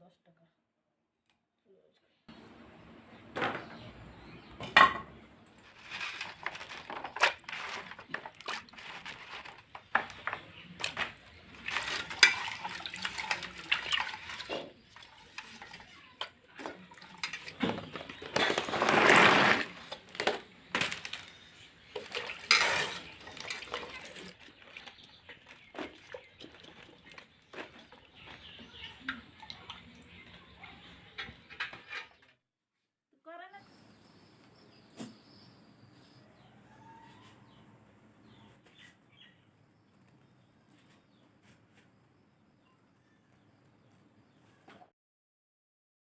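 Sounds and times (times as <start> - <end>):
utensils knocking on pots: 9.8 - 18.7.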